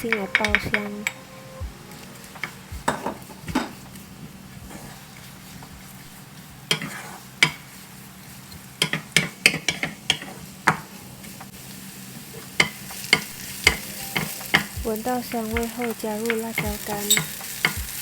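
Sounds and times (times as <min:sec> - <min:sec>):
sizzling in hot oil: 0:01.8 - 0:18.0
spatula scraping pan: 0:04.7 - 0:10.5.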